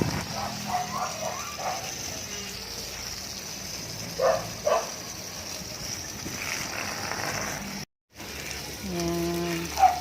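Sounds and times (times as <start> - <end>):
dog barking: 0.3 - 1.9, 4.2 - 5.0, 9.8 - 10.0
faint dog yelp: 0.4 - 1.9.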